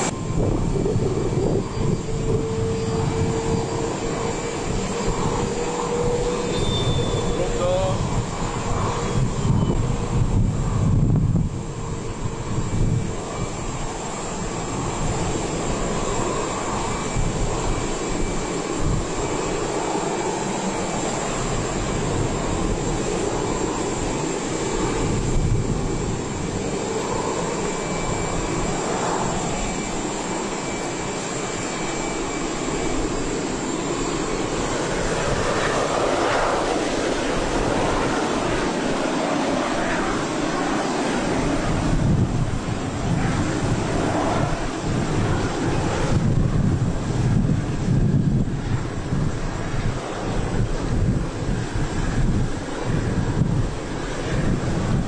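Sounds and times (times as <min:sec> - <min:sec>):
thin high whine: 0:00.0 - 0:08.0
jet engines running: 0:00.0 - 0:55.0.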